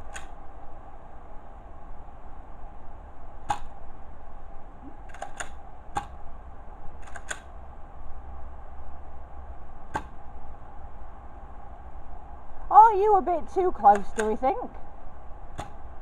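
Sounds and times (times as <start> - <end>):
foam dart blaster clicks: 3.4 - 3.8.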